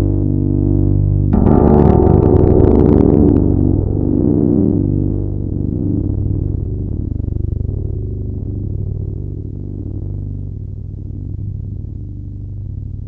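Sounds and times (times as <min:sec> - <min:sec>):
distorted bass guitar drone: 0:00.0 - 0:13.0.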